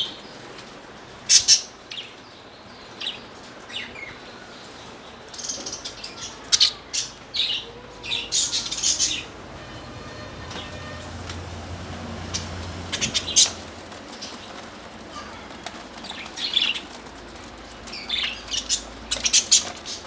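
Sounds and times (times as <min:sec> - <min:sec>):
birds chirping: 0:00.0 - 0:20.0.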